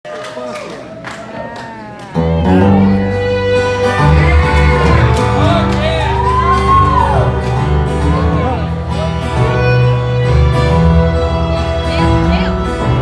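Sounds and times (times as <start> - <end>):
bass notes: 1.2 - 13.0
sliding melody line: 1.3 - 7.6.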